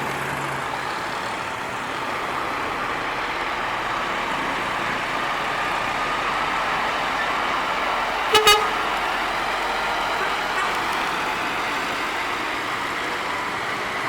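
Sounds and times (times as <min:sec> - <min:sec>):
heavy truck engine and tyres: 0:00.0 - 0:14.0
truck horn blast: 0:08.3 - 0:09.2.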